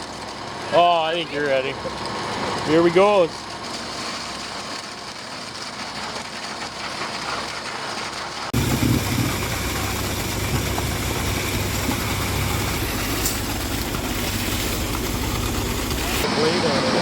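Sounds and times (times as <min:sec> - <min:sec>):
truck engine running: 0:00.0 - 0:17.0
loud deep hum: 0:08.6 - 0:16.3.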